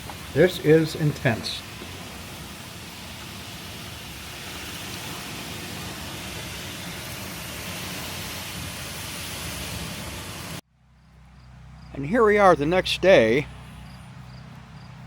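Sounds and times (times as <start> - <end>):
torrential rain pouring: 0.0 - 10.6.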